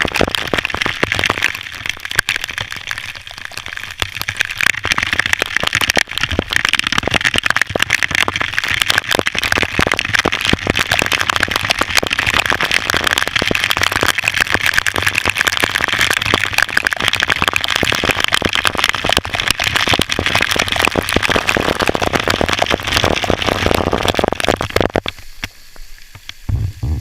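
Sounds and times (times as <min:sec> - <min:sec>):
waterfall water splashing: 0:00.0 - 0:26.5.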